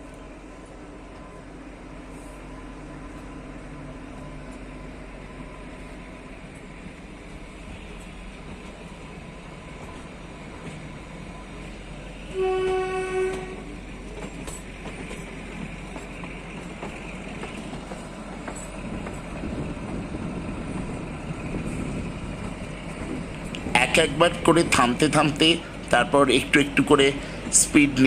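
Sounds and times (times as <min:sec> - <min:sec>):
train rumbling: 0:00.0 - 0:28.0
train horn: 0:12.3 - 0:13.7.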